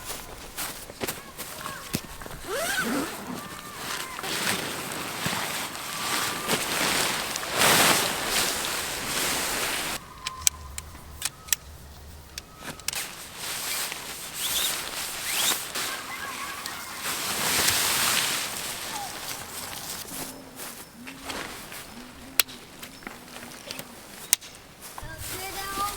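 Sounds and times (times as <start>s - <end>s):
strong gusting wind: 2.0s - 16.6s
sharp clicks: 10.1s - 13.1s.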